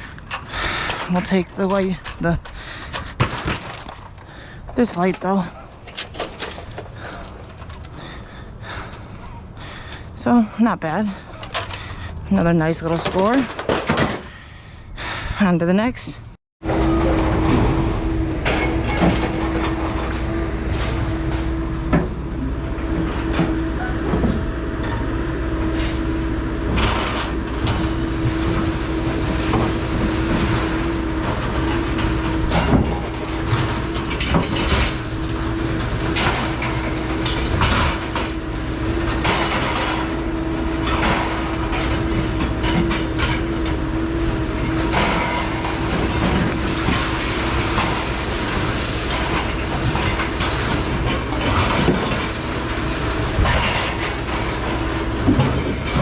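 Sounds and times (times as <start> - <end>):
car road and engine noise: 16.2 - 56.0.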